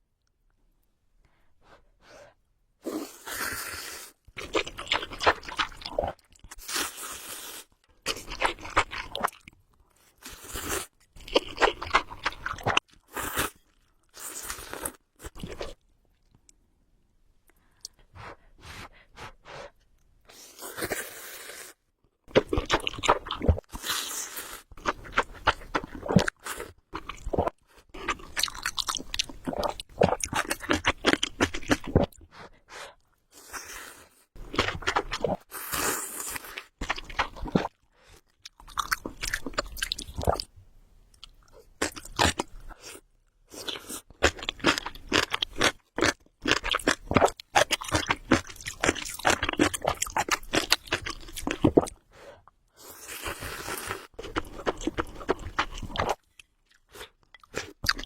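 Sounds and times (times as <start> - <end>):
person crunching and chewing: 4.4 - 9.5, 10.2 - 15.8, 22.3 - 24.2, 24.8 - 32.2, 34.4 - 40.5, 41.2 - 52.0, 52.9 - 58.0.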